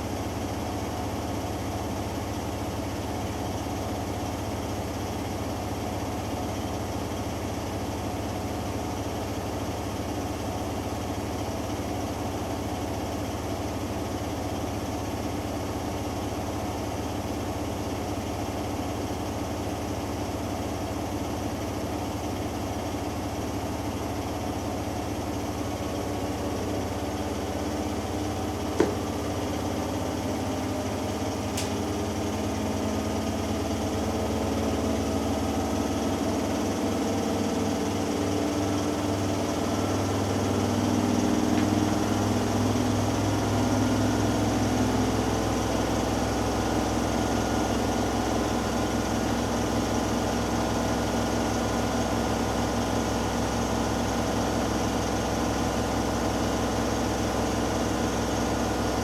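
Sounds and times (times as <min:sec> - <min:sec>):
washing machine spinning hum: 0:00.0 - 0:59.0
sharp click: 0:31.5 - 0:31.9.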